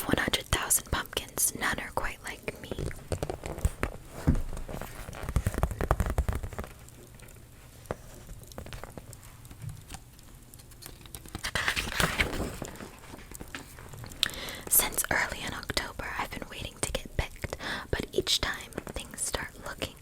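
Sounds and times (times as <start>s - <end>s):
crinkly rustle: 2.6s - 14.2s.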